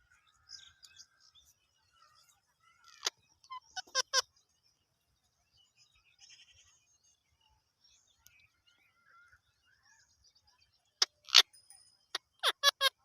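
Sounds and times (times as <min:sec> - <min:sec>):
parakeet chattering: 0:02.9 - 0:04.2, 0:11.0 - 0:11.4, 0:12.1 - 0:13.0.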